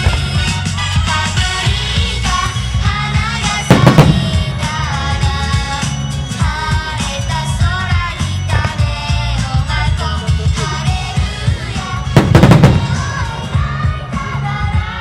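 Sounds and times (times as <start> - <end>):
pop song with singing: 0.0 - 15.0
firework shell bursts: 3.7 - 5.9, 12.2 - 13.5.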